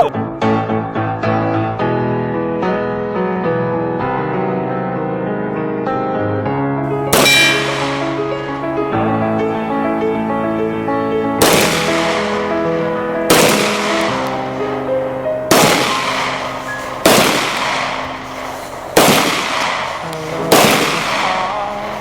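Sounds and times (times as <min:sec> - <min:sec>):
piano background music: 0:00.0 - 0:22.0
echoing gunshots: 0:06.9 - 0:22.0.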